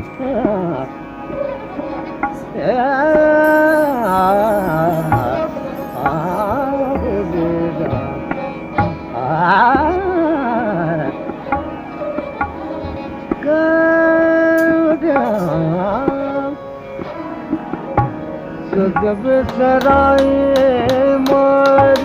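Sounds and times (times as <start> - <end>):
drum strokes: 3.4 - 8.3
person singing ornamented lines: 3.4 - 8.6.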